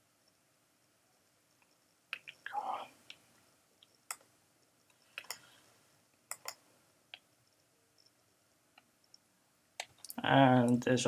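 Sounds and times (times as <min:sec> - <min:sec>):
computer mouse clicks: 0:01.5 - 0:05.5, 0:06.2 - 0:10.8.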